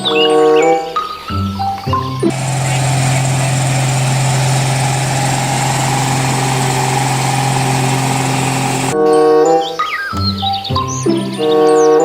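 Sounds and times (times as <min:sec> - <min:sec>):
engine idling: 0:02.3 - 0:09.0.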